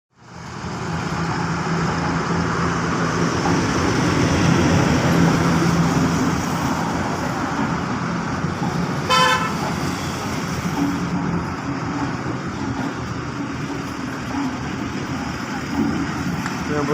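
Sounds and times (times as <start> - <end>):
traffic noise: 0.1 - 16.9
short horn toot: 9.1 - 9.6.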